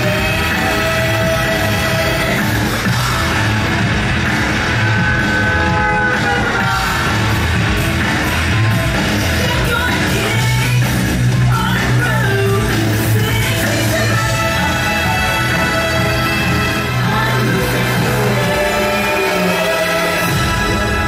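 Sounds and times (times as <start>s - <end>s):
loud music with singing: 0.0s - 21.0s.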